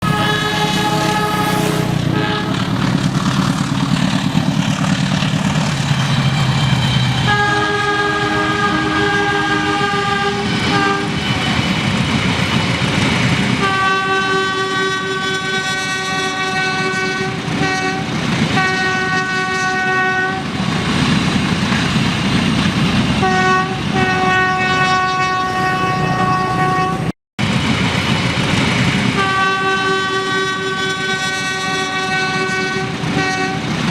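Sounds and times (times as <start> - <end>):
train horn blasts: 0.0 - 2.9, 7.2 - 11.2, 13.6 - 20.5, 23.2 - 27.1, 29.2 - 33.8
moving train rumble and clatter: 0.0 - 33.9.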